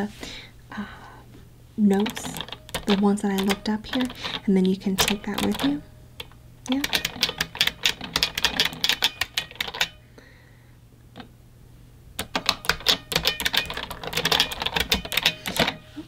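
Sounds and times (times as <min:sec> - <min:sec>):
mechanical keyboard typing: 0:01.9 - 0:10.0, 0:12.2 - 0:15.8.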